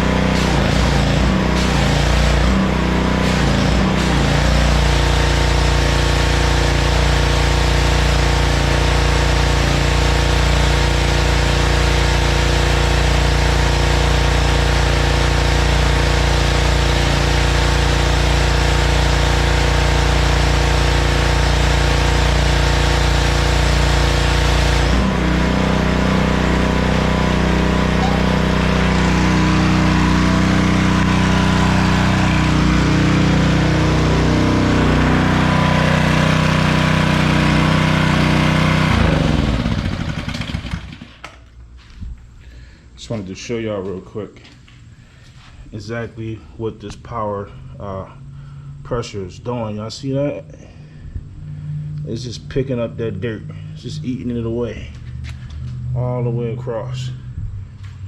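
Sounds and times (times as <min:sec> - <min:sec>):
water spray hissing on concrete: 0:00.0 - 0:24.8
pressure washer engine running: 0:00.0 - 0:41.4.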